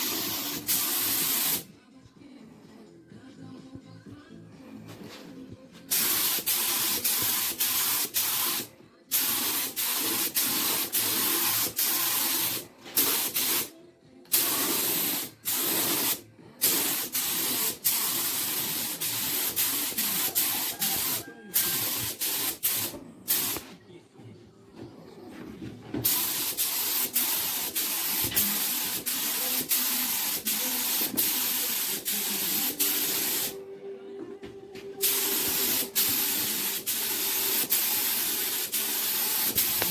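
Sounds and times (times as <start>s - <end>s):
paint spray hissing: 0.0s - 1.7s, 5.9s - 13.7s, 14.3s - 23.6s, 26.0s - 33.6s, 35.0s - 39.9s.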